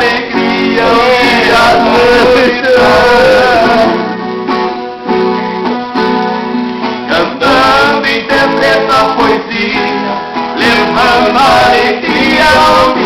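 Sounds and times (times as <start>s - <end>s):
men singing: 0.0s - 4.2s, 7.0s - 13.0s
acoustic guitar strumming: 0.0s - 13.0s.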